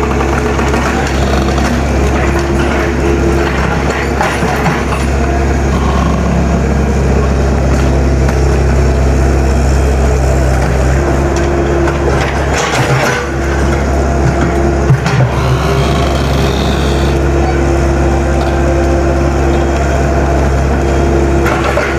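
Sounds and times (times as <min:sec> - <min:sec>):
excavator diesel engine running: 0:00.0 - 0:21.9.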